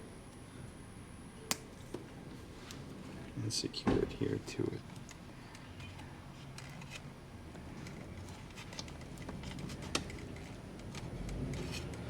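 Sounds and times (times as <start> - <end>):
low steady hum: 0.0 - 12.0
hands handling wire and tape: 4.9 - 12.0.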